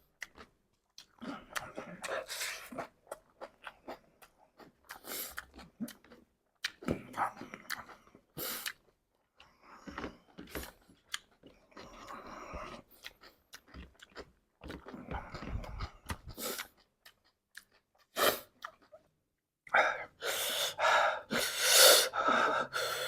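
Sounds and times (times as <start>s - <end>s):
crunchy snack chewing: 9.8s - 19.1s.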